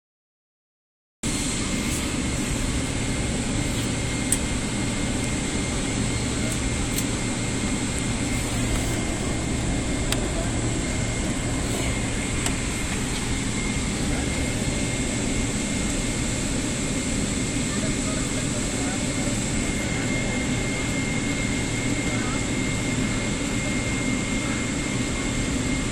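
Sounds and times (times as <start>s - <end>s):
aircraft cabin rumble: 1.2s - 25.9s
faint high whine: 1.3s - 25.9s.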